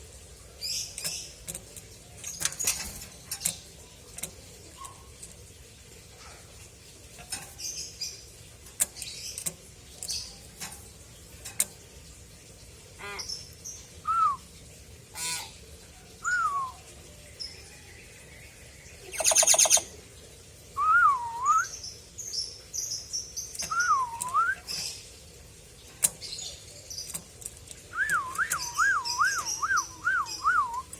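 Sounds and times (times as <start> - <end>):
myna clicks and chirps: 19.0 - 19.9, 23.5 - 25.0, 26.0 - 30.9.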